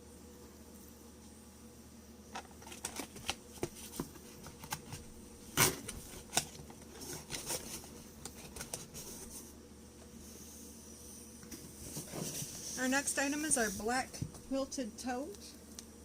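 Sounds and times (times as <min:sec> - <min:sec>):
packaging clicks and rustles: 0:02.3 - 0:09.1.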